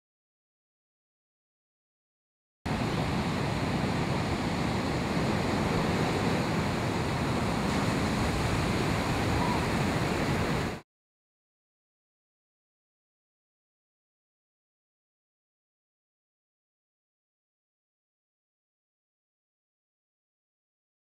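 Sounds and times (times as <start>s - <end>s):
ocean waves breaking: 2.7s - 10.8s.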